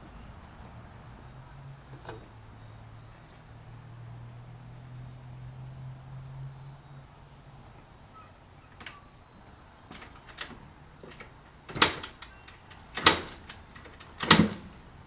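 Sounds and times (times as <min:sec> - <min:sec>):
engine being kicked over: 0:09.9 - 0:14.8.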